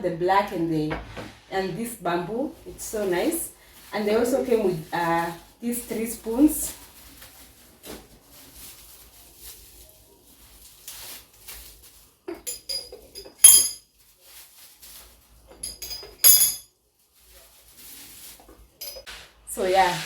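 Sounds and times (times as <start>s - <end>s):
spoons and canisters clinking: 12.3s - 13.9s, 15.5s - 16.6s, 18.8s - 19.2s.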